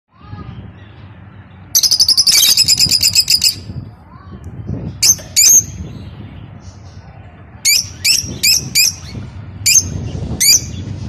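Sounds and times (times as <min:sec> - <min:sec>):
lovebirds twittering: 0:00.5 - 0:03.7, 0:04.8 - 0:11.0
shrill bird calls: 0:01.8 - 0:03.6.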